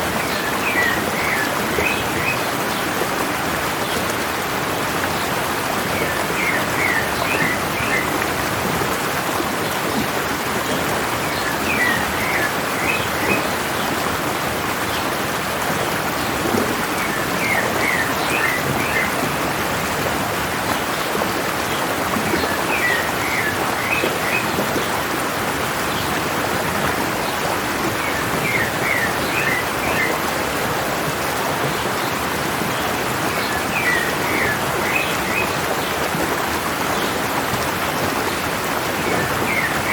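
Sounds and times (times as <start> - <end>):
mountain stream running: 0.0 - 39.9
bird song: 6.0 - 8.2, 10.7 - 13.8, 17.0 - 19.2, 28.0 - 30.2, 32.7 - 36.0, 39.0 - 39.9.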